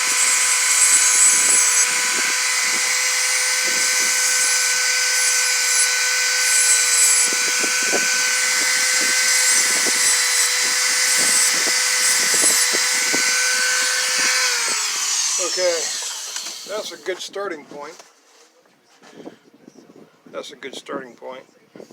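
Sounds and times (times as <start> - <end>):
grinding metal rasp: 0.0 - 17.0
power tool high-pitched whine: 0.0 - 17.2.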